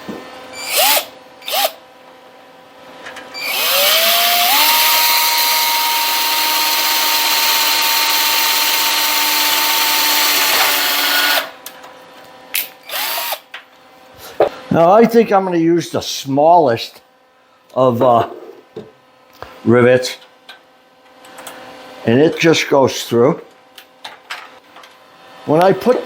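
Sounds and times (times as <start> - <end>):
electric drill drilling sheet metal: 0.6 - 1.8, 3.4 - 11.5, 12.8 - 13.5.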